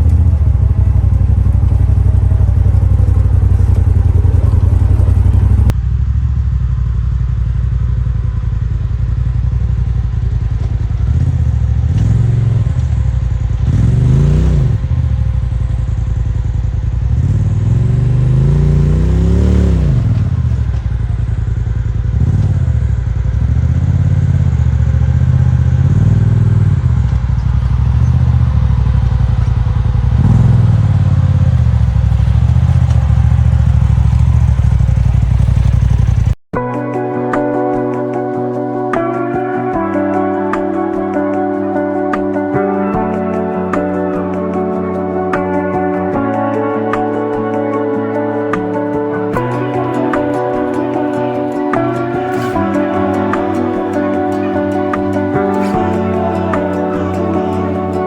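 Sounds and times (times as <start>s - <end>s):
engine revving under load: 10.9s - 15.5s, 17.0s - 20.8s, 22.1s - 36.4s.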